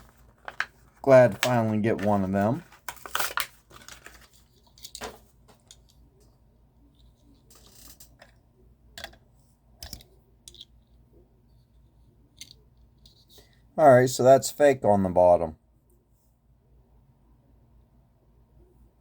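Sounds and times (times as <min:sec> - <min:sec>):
packaging rustle: 0:00.0 - 0:05.8
plastic packaging clicks and taps: 0:00.4 - 0:05.9.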